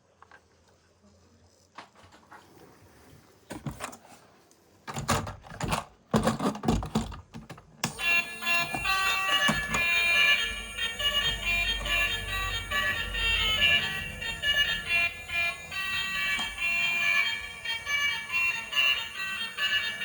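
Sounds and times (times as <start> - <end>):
electronic tune with a beat: 8.0 - 20.0.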